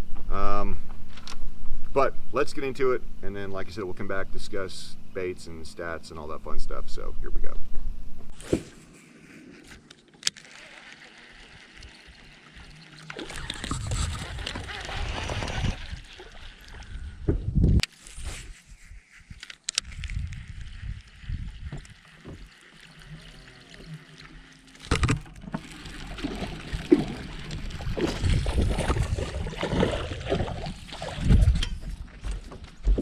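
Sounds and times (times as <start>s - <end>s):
water lapping against boat: 10.4s - 17.2s, 21.0s - 32.2s.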